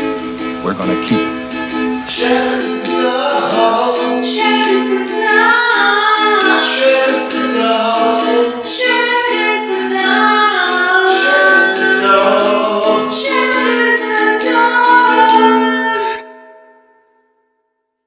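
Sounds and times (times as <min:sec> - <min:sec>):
woman singing: 0:02.1 - 0:16.2.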